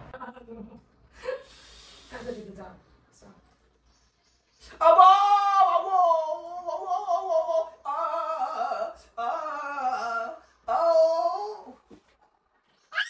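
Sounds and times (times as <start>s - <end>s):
man moaning high-pitched: 4.8s - 11.8s.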